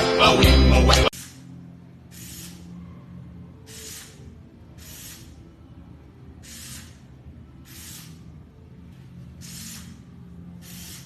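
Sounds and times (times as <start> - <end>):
short bursts of hiss: 1.1 - 1.5, 2.1 - 2.7, 3.7 - 5.4, 6.4 - 8.3, 9.3 - 11.0.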